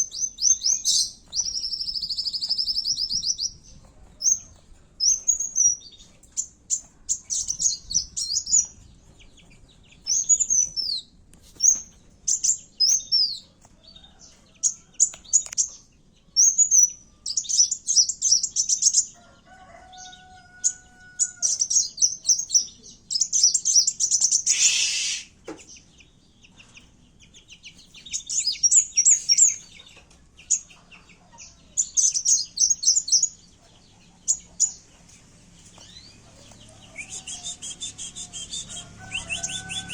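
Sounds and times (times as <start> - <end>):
sunbird chirping and trilling: 0.0 - 8.8, 20.0 - 25.9, 27.4 - 33.4, 35.5 - 39.9.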